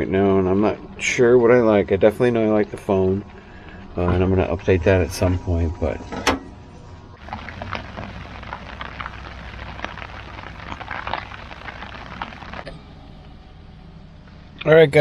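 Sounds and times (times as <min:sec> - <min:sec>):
background hum: 0:00.0 - 0:15.0
rain patter: 0:07.2 - 0:12.7.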